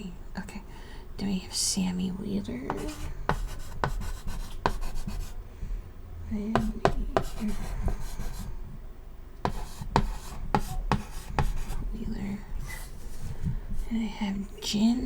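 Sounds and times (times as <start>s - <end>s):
chalk writing on chalkboard: 2.6s - 5.4s, 6.5s - 8.5s, 9.4s - 14.0s.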